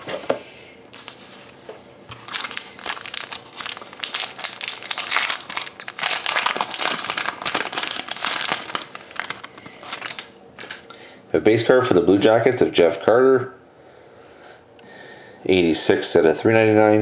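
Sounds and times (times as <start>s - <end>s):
plastic wrapper crinkling: 2.1s - 10.9s.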